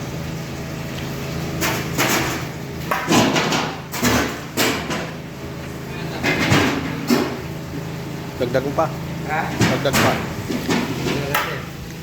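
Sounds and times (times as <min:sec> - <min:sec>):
kitchen scraping and clattering: 0:01.6 - 0:05.2, 0:06.2 - 0:07.4, 0:09.5 - 0:11.6.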